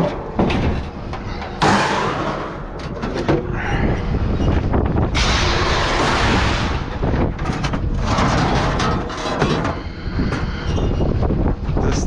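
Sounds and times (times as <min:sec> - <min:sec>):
scrap metal crashing: 0:00.0 - 0:03.3, 0:05.1 - 0:09.9.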